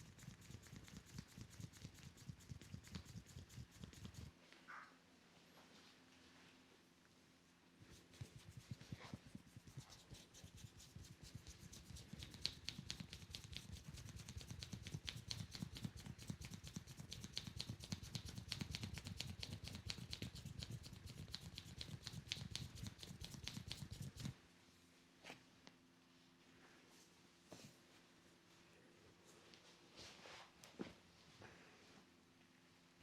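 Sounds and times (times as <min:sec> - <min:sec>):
hands tapping rapidly on head: 0:08.2 - 0:24.3.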